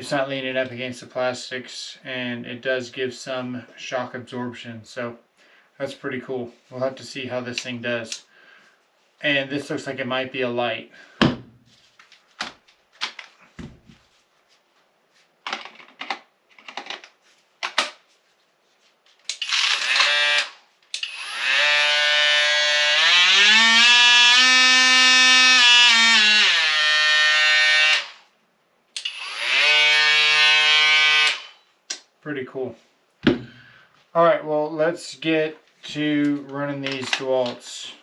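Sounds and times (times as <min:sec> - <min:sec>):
handling knocks: 0:11.2 - 0:11.6, 0:13.6 - 0:14.0, 0:33.2 - 0:33.6
power tool motor whining: 0:19.4 - 0:28.2, 0:29.0 - 0:31.6.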